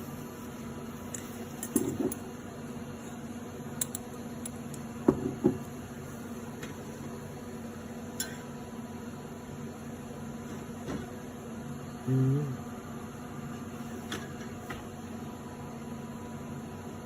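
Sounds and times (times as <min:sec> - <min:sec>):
steady electrical hum: 0:00.0 - 0:17.0.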